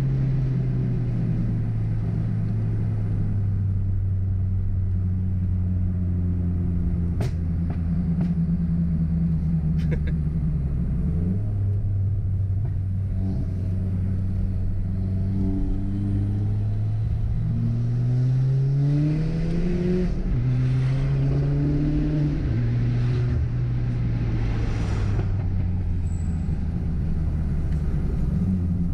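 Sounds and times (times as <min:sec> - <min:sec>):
car engine revving through gears: 0:12.6 - 0:25.8.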